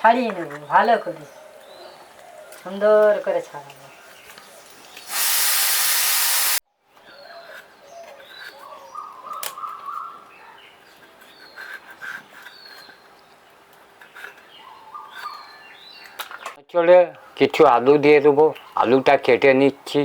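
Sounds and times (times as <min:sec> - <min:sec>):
birds chirping: 0:00.0 - 0:05.2, 0:07.0 - 0:16.6
loud even hiss: 0:04.9 - 0:06.6.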